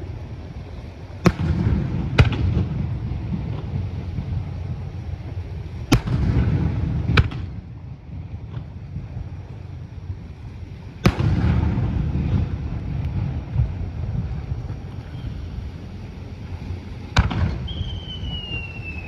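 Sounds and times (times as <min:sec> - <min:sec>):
fireworks bangs with rumble: 0:01.2 - 0:15.7, 0:16.9 - 0:19.0.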